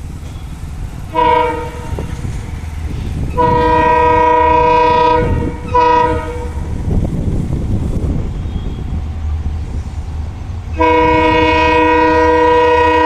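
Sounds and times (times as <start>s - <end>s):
train running rumble: 0.0s - 13.0s
locomotive air horn blasts: 1.1s - 2.1s, 3.3s - 6.6s, 10.7s - 13.0s.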